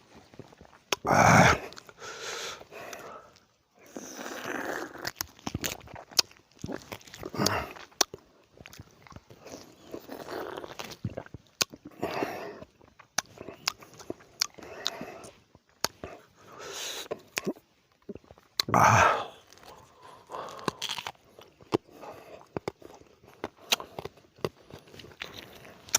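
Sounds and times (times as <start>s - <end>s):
person chewing: 0.2s - 25.9s
wet mouth clicks: 0.9s - 2.0s, 4.1s - 16.2s.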